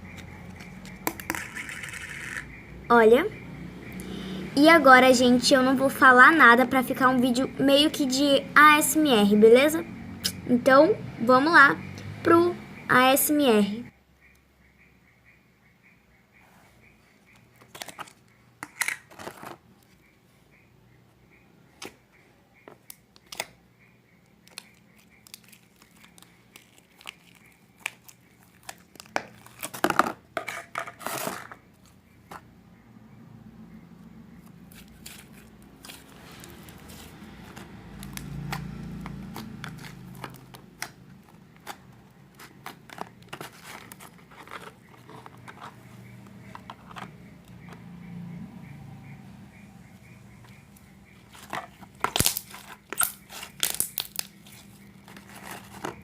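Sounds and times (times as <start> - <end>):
hands squishing crunchy slime: 24.5 - 29.8, 34.7 - 45.8, 51.3 - 56.0.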